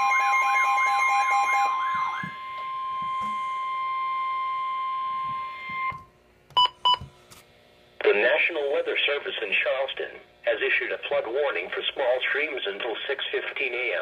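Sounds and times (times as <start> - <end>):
steady high alert tone: 0.0 - 3.9
warbling pulsing alarm: 0.0 - 6.1.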